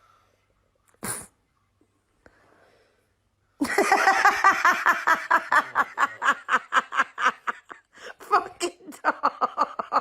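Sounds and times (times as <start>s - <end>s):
person laughing hard: 3.6s - 10.0s.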